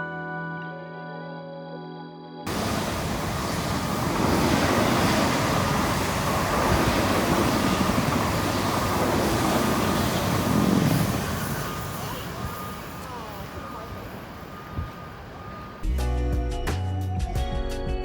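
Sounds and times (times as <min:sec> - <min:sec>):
highway traffic rushing: 0:02.5 - 0:15.8.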